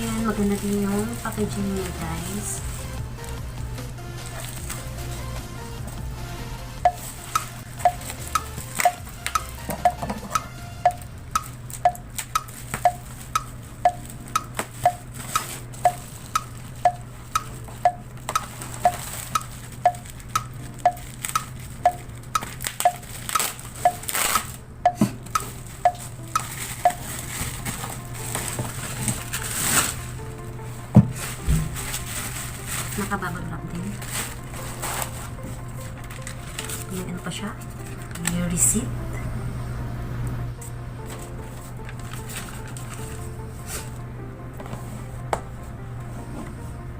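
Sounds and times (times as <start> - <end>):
plucked note: 0.0 - 12.1, 12.8 - 46.8
quiet background music: 0.0 - 46.9
packaging rustling: 4.1 - 5.2, 11.4 - 24.6, 25.5 - 30.2, 31.0 - 37.0, 41.0 - 43.4.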